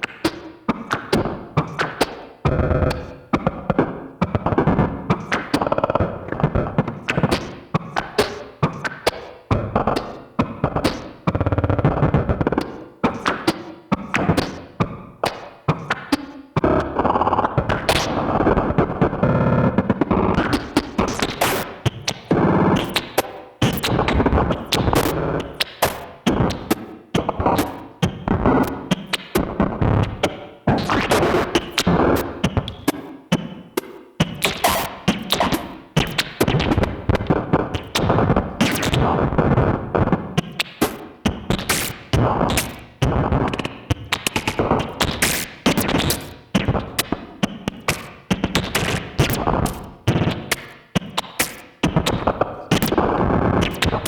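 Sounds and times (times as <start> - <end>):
experimental synthesizer music: 20.1 - 54.0
glitchy sharp clicks: 40.4 - 53.0.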